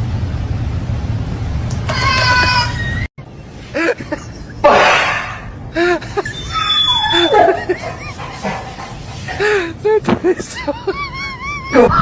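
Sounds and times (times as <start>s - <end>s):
people laughing: 3.7s - 4.7s, 5.8s - 12.0s.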